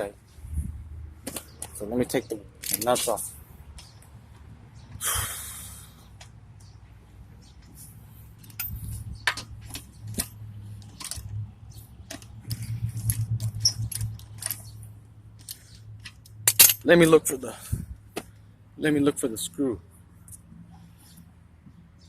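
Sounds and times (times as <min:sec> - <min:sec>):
metal clicks and clinks: 0:02.6 - 0:03.2, 0:08.4 - 0:11.4, 0:12.1 - 0:14.8, 0:15.4 - 0:16.9.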